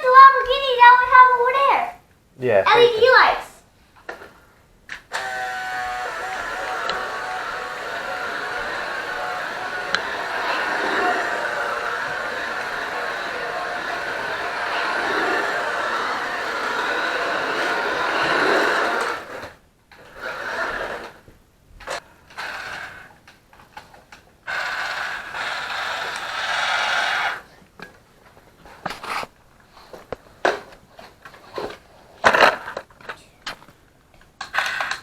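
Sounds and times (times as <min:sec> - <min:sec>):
toy car motor and gears: 0:05.1 - 0:21.2, 0:21.9 - 0:23.2, 0:24.5 - 0:27.5.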